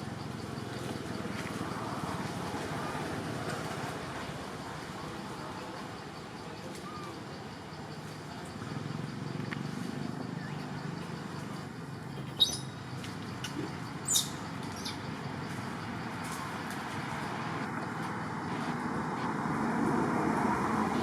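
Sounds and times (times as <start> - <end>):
steady background noise: 0.0 - 21.0
monkey squeaking: 12.2 - 12.8, 14.0 - 15.0.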